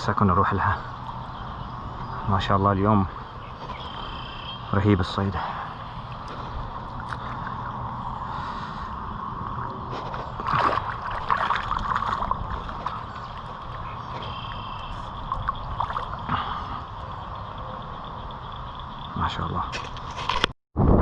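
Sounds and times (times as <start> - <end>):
water sloshing and splashing: 5.5 - 17.4.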